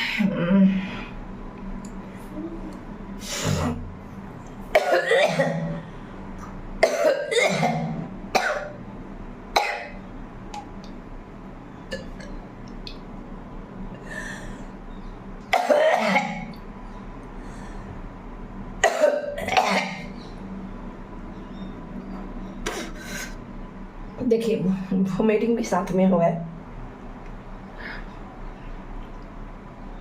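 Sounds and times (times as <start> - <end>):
woman coughing: 4.8 - 5.8, 6.8 - 8.8, 9.6 - 10.0, 15.5 - 16.5, 18.8 - 20.1.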